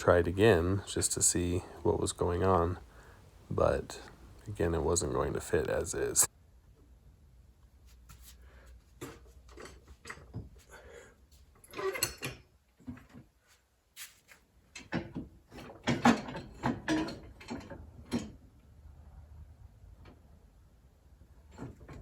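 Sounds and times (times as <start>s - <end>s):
metal clunks and knocks: 14.8s - 18.4s.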